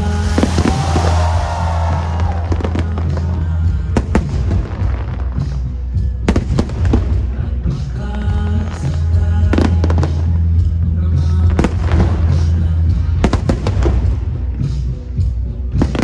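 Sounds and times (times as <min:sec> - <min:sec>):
fireworks hissing and whistling: 0:00.0 - 0:04.3
loud music with heavy bass: 0:00.0 - 0:16.0.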